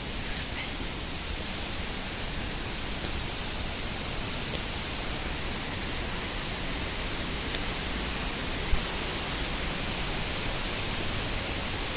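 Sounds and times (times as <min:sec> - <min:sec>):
fast-flowing water rushing: 0:00.0 - 0:11.9.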